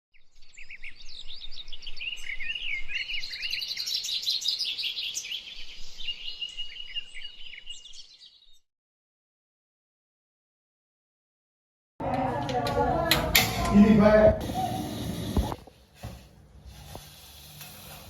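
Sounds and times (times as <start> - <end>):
birds chirping and singing: 0.2 - 8.6.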